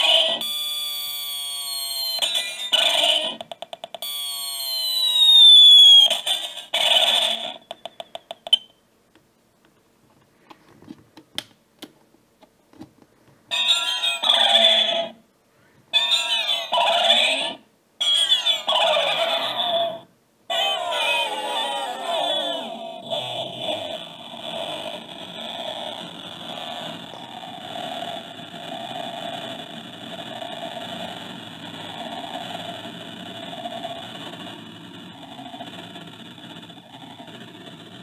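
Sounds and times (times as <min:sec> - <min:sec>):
glitched sound clips from small speaker: 0:00.0 - 0:08.8, 0:13.5 - 0:15.1, 0:16.0 - 0:38.0
clicks and pops: 0:07.6 - 0:09.3.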